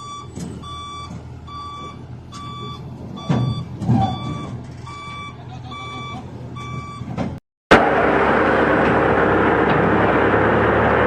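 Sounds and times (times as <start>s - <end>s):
back-up alarm beeping: 0.0s - 7.1s
engine running: 0.0s - 11.0s.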